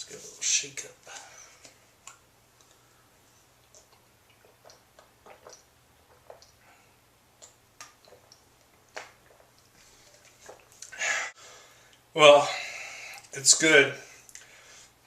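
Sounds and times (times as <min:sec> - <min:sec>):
person drinking from plastic bottle: 0:03.7 - 0:06.7, 0:07.4 - 0:11.0.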